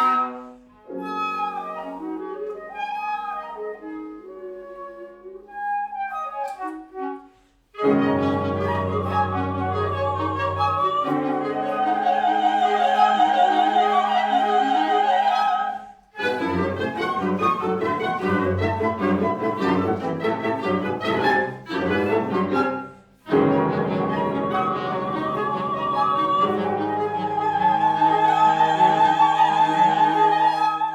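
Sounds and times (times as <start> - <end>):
operatic orchestral music: 7.8 - 30.9.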